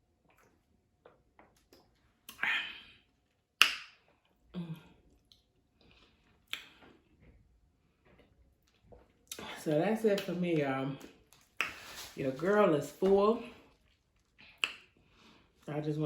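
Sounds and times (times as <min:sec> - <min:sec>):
soft chewing clicks: 0:05.1 - 0:09.5
wet mouth smacks: 0:06.5 - 0:07.0, 0:11.3 - 0:12.0, 0:14.4 - 0:15.0.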